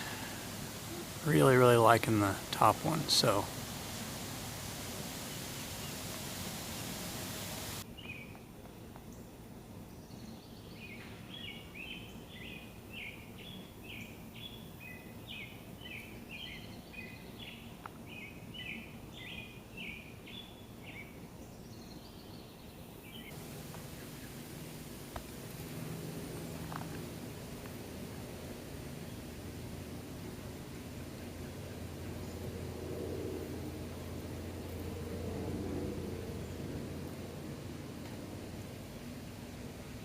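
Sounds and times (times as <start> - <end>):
steady hiss: 0.0 - 9.8, 22.9 - 35.3, 36.4 - 40.0.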